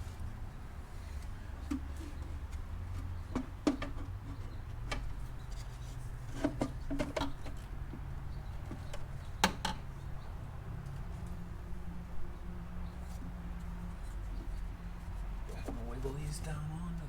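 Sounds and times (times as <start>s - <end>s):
clicks and knocks of engine parts: 1.2s - 10.0s.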